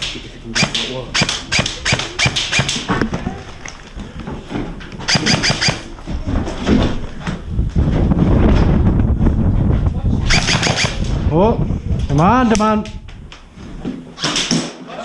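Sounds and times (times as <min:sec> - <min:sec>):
airsoft guns firing in bursts: 0:00.6 - 0:02.9, 0:05.1 - 0:05.9, 0:10.2 - 0:11.1
loud low rumbling: 0:06.9 - 0:13.8.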